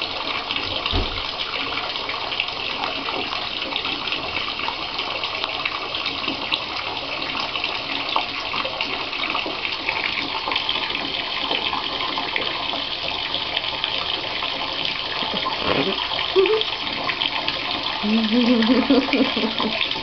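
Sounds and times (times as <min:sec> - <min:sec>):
tap running into bathtub: 0:00.0 - 0:20.0
water splashing: 0:11.0 - 0:20.0.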